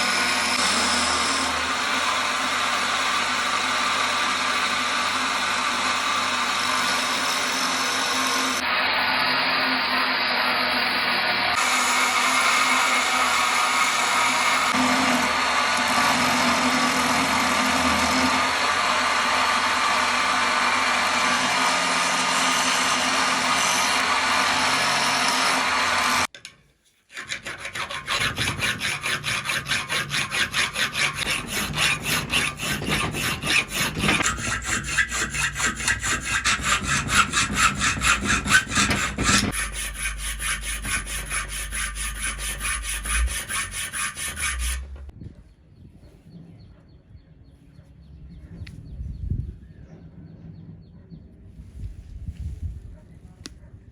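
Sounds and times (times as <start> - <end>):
continuous grinding noise: 0.0 - 26.5, 27.1 - 45.2
abrasive strokes on steel: 27.1 - 45.1.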